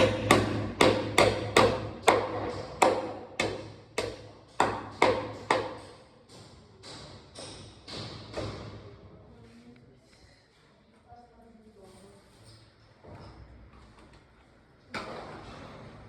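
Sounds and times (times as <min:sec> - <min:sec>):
hammer striking nail into masonry: 0:00.0 - 0:08.8.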